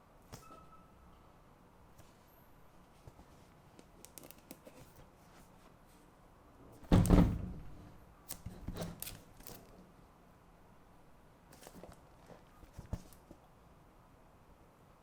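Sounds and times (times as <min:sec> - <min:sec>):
faint clicks and rustles: 0:11.5 - 0:13.5.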